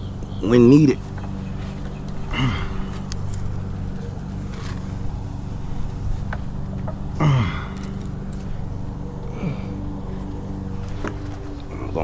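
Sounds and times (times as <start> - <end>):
light clicks: 0.0 - 11.8
low machine hum: 0.0 - 12.0
grunt-like vocal sound: 2.3 - 3.1, 7.2 - 8.2, 9.3 - 10.1.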